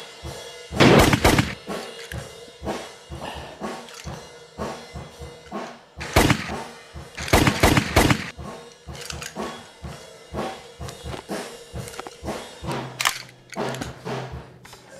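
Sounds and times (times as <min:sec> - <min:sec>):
background music with drum beat: 0:00.0 - 0:14.9
gunshots: 0:00.8 - 0:01.6, 0:06.0 - 0:08.3.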